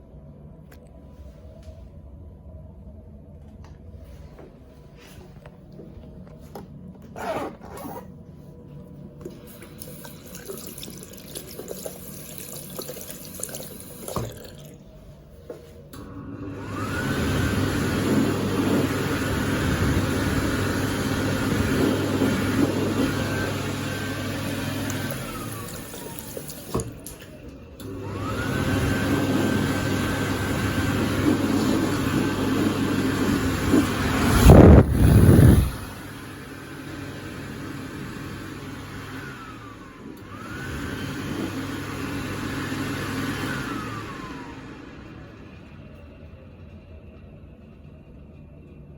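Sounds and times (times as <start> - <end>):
electric hand dryer motor whine: 16.0 - 46.0
loud rush of noise: 33.8 - 36.0.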